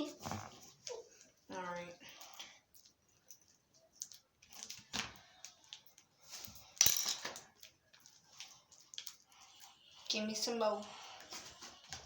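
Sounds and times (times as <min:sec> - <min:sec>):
hands kneading sticky slime: 0:07.4 - 0:12.0.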